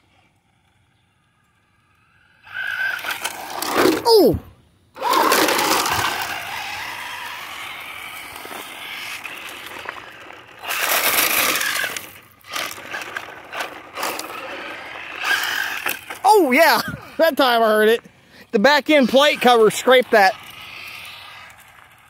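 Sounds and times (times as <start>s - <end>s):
remote-control car motor whining: 0.0s - 4.4s, 5.0s - 17.2s, 18.9s - 22.0s
car plate scraping ground: 2.5s - 4.1s, 5.0s - 16.2s.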